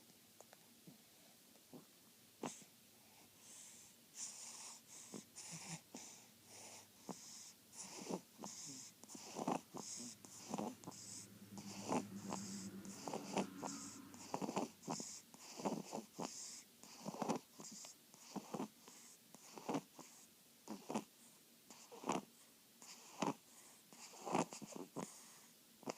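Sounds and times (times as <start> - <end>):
wheezy snoring: 3.4 - 21.1, 24.0 - 25.2
low snoring rumble: 4.2 - 18.7.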